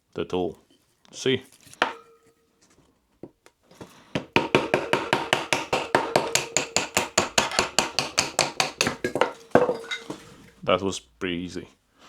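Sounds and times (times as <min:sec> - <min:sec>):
knife blade striking wood: 0:01.8 - 0:02.2.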